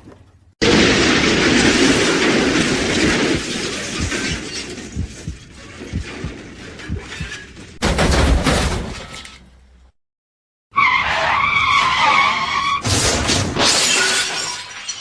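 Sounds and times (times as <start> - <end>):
car crash smash: 0.6 - 5.0, 7.8 - 9.3, 12.3 - 15.0
glass breaking: 0.6 - 9.4, 12.8 - 15.0
debris clattering: 0.6 - 9.6, 12.8 - 15.0.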